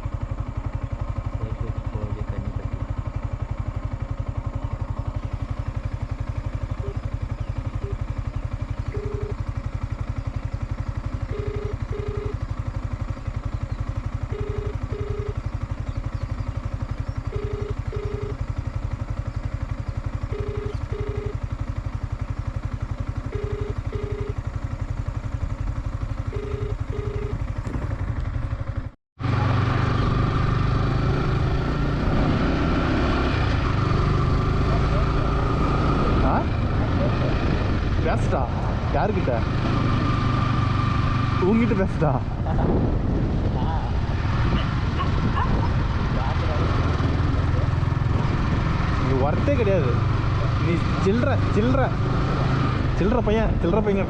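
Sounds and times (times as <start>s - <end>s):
motorcycle engine rumble: 0.0s - 54.0s
short beeps: 7.8s - 8.1s, 8.9s - 9.4s, 11.3s - 12.4s, 14.3s - 15.4s, 17.3s - 18.4s, 20.3s - 21.4s, 23.3s - 24.4s, 26.3s - 27.4s
wind noise: 42.2s - 46.8s.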